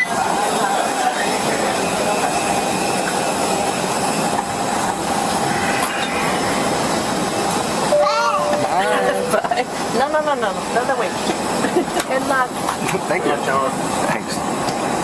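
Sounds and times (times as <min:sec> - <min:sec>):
faint steady whine: 0:04.0 - 0:10.0.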